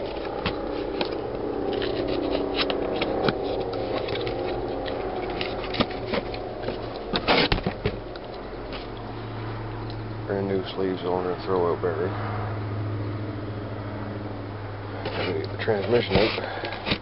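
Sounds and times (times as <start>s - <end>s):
auto parts scraping and clicking: 0.0s - 9.1s, 15.0s - 17.0s
steady low hum: 0.0s - 17.0s.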